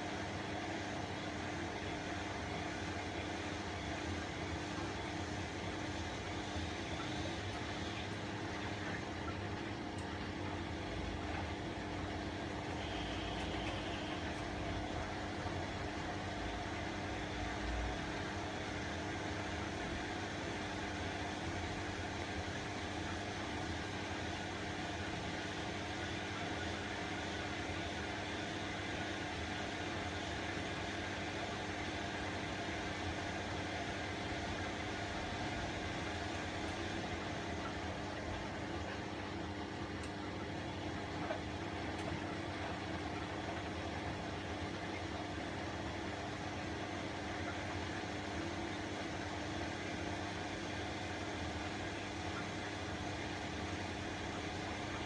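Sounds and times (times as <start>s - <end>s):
washing machine humming: 0.0s - 55.0s.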